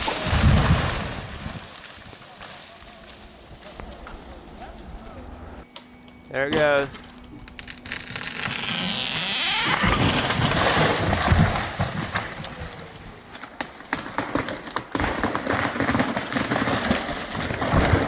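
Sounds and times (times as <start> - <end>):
tree rushing through branches: 0.0 - 3.7, 7.7 - 12.7
branches cracking and snapping: 0.0 - 4.9, 6.6 - 18.0.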